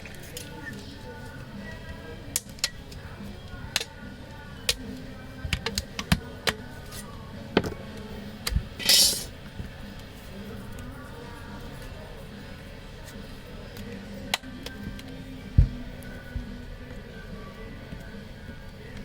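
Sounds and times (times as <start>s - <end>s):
quiet background music: 0.0s - 19.0s
short hiss: 8.8s - 9.3s.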